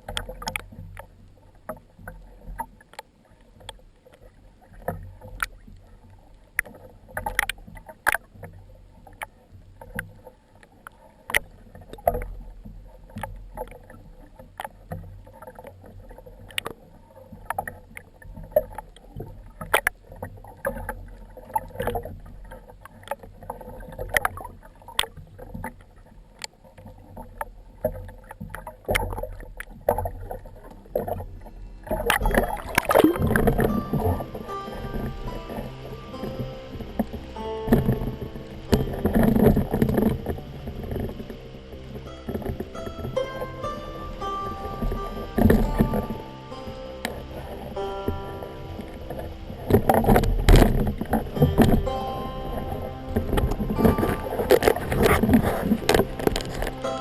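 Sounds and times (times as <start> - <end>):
water sloshing and splashing: 0.0 - 57.0
low rumble: 29.4 - 57.0.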